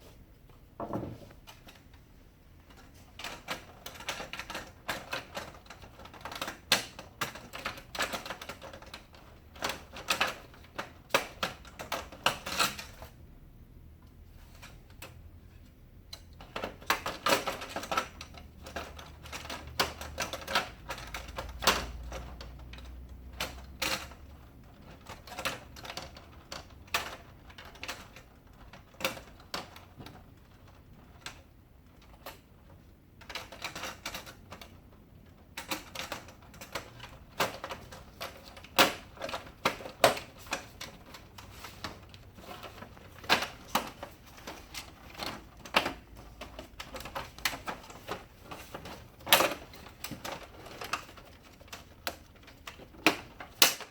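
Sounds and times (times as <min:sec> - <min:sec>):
plastic printer panels snapping: 0:35.4 - 0:53.9.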